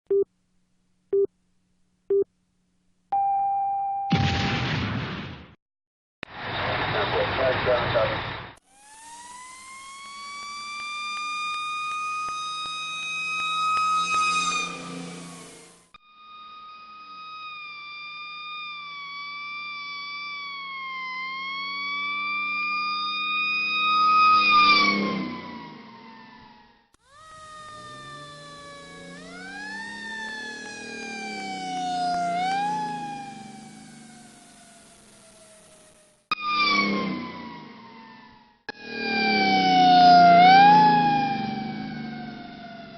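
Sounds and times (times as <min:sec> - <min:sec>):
siren wailing: 0:08.6 - 0:42.9.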